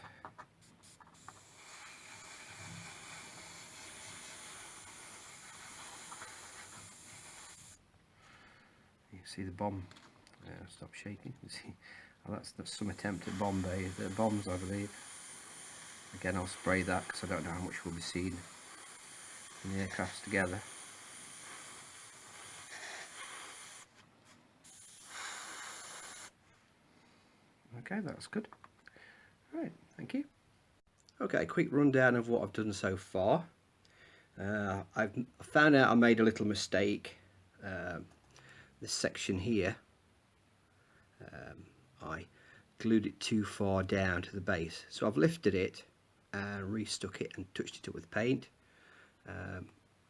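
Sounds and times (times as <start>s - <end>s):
spray paint hissing: 0.6s - 7.8s, 12.7s - 23.9s, 24.6s - 26.4s.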